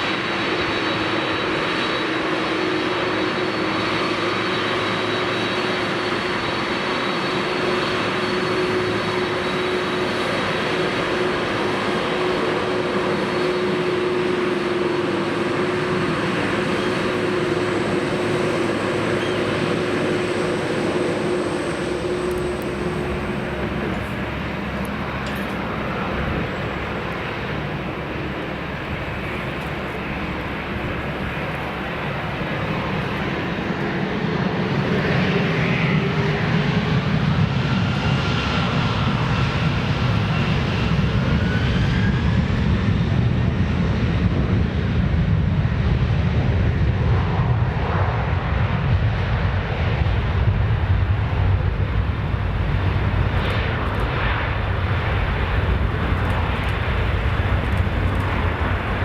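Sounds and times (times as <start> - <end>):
jet engines rumbling: 0.0 - 59.0
rising jet whine: 0.0 - 59.0.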